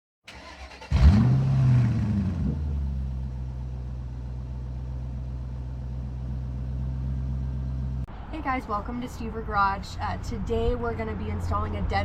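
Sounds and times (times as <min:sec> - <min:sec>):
starter motor: 0:00.3 - 0:06.9
car engine starting and idling: 0:00.3 - 0:08.1.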